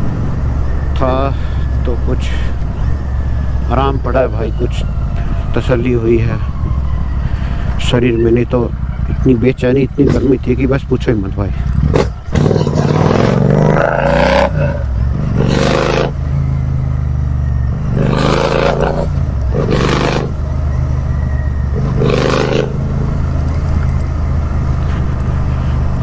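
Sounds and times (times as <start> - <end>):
motorcycle engine rumbling: 0.0 - 26.0.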